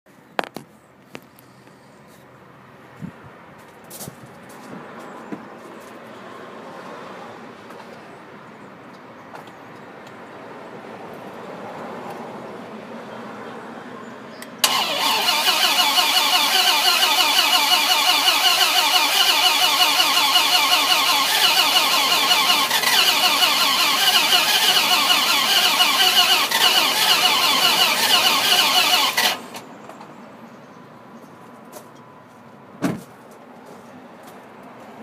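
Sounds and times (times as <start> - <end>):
starter motor cranking: 14.6 - 29.6.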